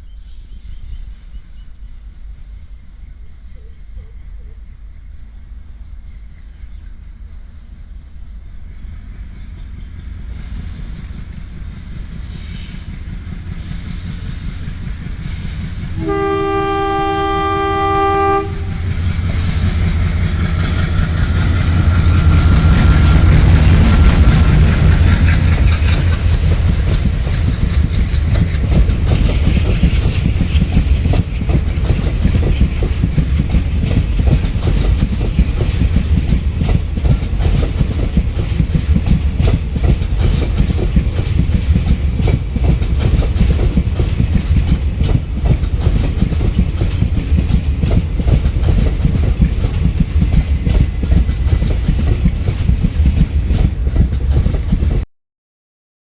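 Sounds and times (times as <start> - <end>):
train rumbling past: 0.0 - 55.1
wheels clattering on track: 9.2 - 55.0.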